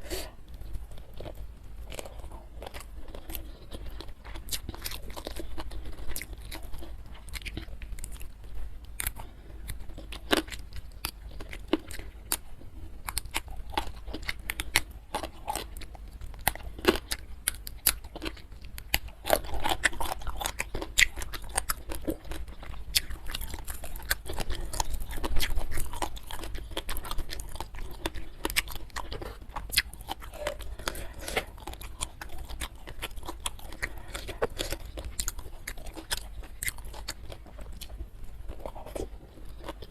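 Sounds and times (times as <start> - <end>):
chewing with crisp crunches: 0.0 - 39.9.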